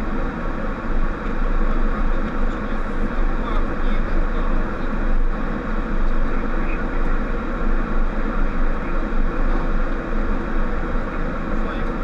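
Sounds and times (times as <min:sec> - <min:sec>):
aircraft engine and airflow drone: 0:00.0 - 0:12.0.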